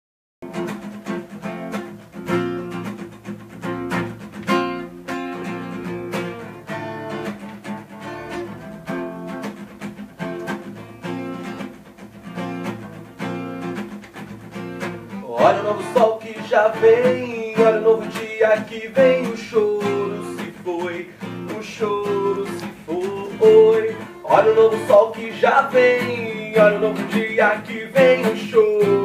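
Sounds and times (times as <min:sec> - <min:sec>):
acoustic guitar strummed and plucked: 0:00.4 - 0:29.0.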